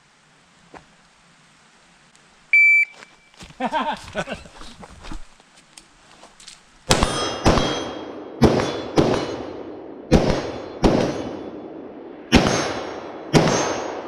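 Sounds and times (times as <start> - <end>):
gunshots: 6.9 - 11.6, 12.2 - 14.0
ringing clang of steel targets: 6.9 - 14.0.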